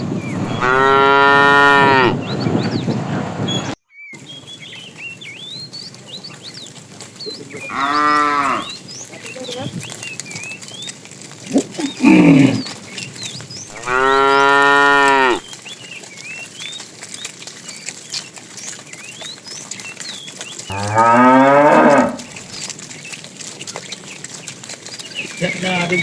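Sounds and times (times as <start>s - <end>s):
cattle mooing: 0.4s - 2.2s, 7.5s - 8.8s, 11.4s - 12.8s, 13.7s - 15.4s, 20.7s - 22.5s.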